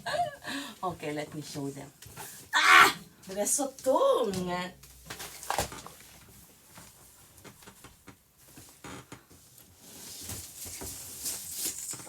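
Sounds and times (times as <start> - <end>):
wrapping rustling: 3.2 - 12.0.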